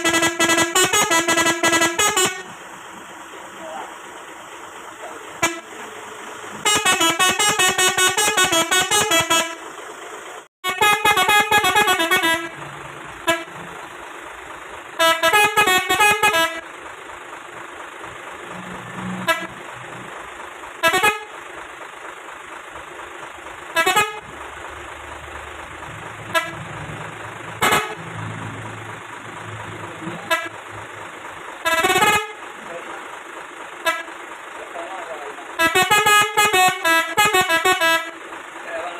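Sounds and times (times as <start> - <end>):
short horn toots: 0.0 - 2.6, 5.4 - 5.8, 6.6 - 9.6, 10.7 - 12.6, 13.2 - 13.6, 15.0 - 16.6, 19.1 - 19.7, 20.8 - 21.4, 23.8 - 24.2, 26.3 - 26.7, 27.6 - 28.0
truck horn playing melodies: 0.0 - 2.7, 5.4 - 5.9, 6.6 - 9.8, 10.6 - 13.9, 14.9 - 16.7, 18.5 - 20.2, 20.8 - 21.5, 23.7 - 24.4, 26.1 - 27.0, 27.6 - 30.9, 31.6 - 32.5, 33.8 - 34.2, 35.6 - 38.3.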